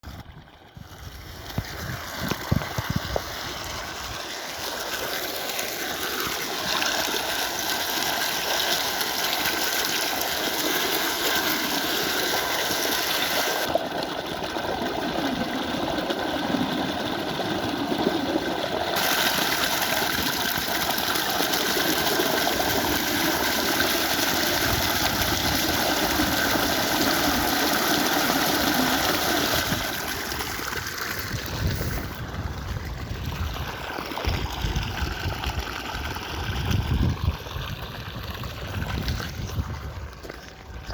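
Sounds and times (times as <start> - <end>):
water rushing: 0.1 - 40.9.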